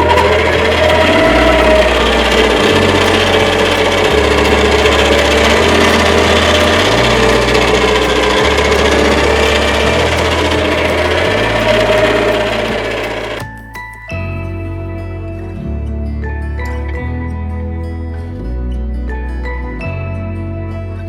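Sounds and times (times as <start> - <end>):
electric hand mixer running: 0.0 - 13.5
background music with bass: 0.0 - 21.0.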